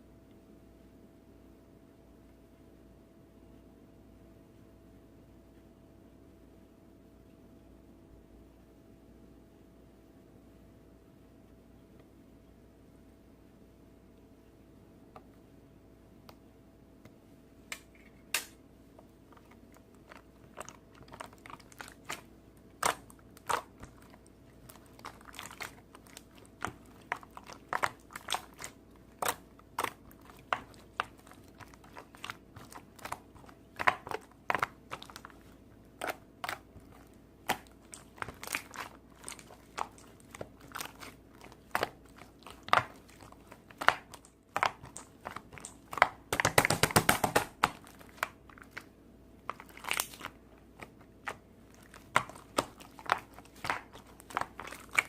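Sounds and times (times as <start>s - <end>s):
faint steady hum: 0.0s - 55.0s
crunching crackling clicks: 19.3s - 55.0s.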